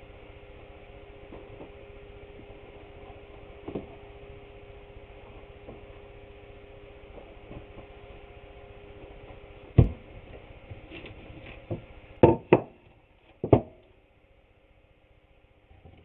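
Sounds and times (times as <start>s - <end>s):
faint steady hum: 0.0s - 16.0s
wooden boards knocking on countertop: 11.7s - 12.7s.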